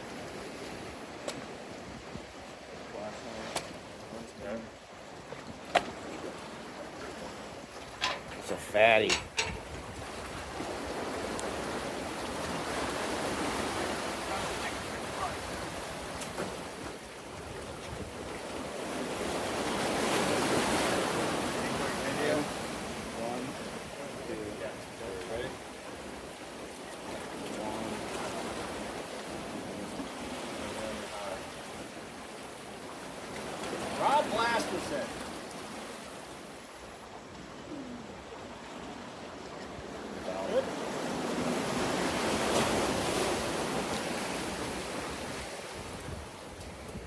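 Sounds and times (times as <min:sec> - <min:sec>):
ocean surf washing in: 0:08.3 - 0:26.6, 0:27.3 - 0:36.8, 0:40.1 - 0:47.0.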